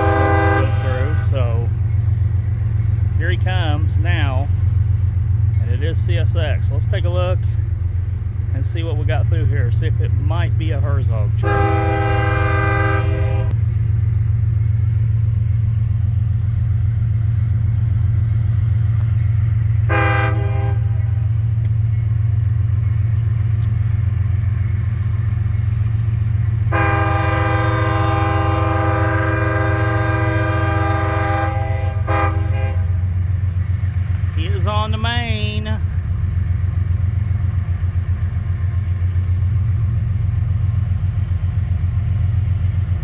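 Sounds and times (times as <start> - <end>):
train horn blasts: 0.0 - 1.6, 11.4 - 13.6, 19.8 - 21.3, 26.7 - 33.1
diesel locomotive engine rumble: 0.0 - 43.0.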